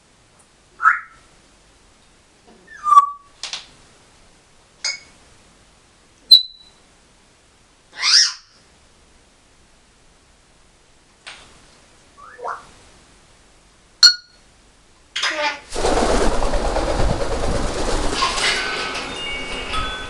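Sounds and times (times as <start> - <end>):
parrot whistles: 0.8 - 1.2, 2.7 - 3.3, 12.2 - 12.6
parrot squawk: 7.9 - 8.6, 12.2 - 12.7.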